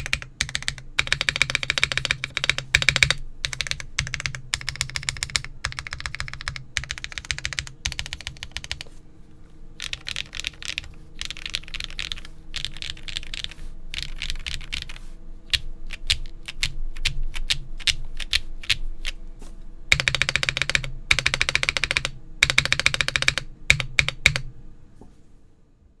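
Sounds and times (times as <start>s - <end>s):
mechanical keyboard typing: 0.0s - 8.9s, 9.8s - 19.2s, 19.9s - 24.5s.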